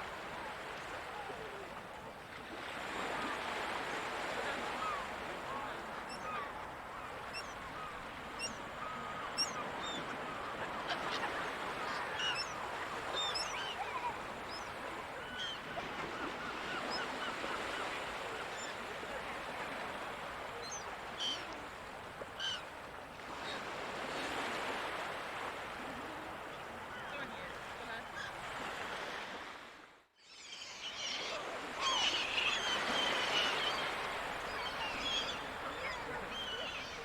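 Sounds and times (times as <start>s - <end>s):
ocean surf: 0.0s - 29.9s, 30.6s - 37.0s
gulls calling: 4.6s - 19.0s, 30.2s - 37.0s.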